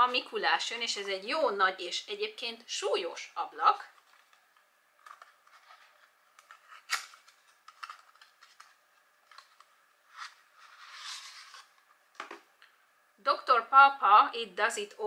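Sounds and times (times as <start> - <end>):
cardboard rustling: 9.3 - 11.8.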